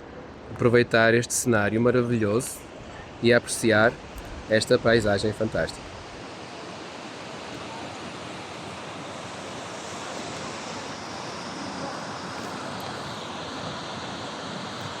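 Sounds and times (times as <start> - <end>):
river water rushing over rocks: 0.0 - 15.0.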